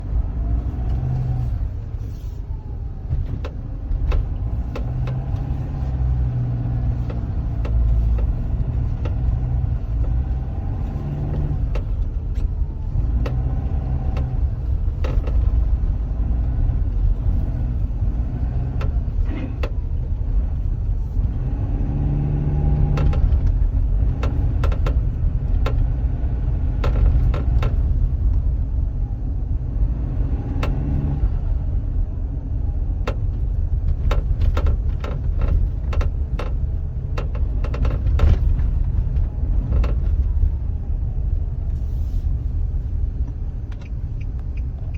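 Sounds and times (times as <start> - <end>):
car engine low rumble: 0.0 - 44.9.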